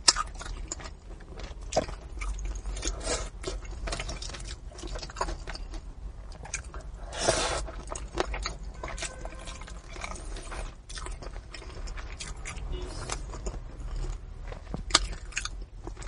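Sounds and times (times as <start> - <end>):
person chewing and biting food: 0.0 - 16.0.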